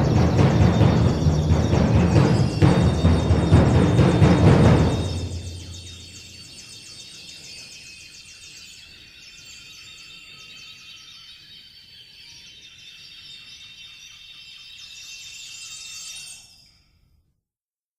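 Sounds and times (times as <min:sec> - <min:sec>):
chamber ensemble sustained tones: 0:00.0 - 0:06.5.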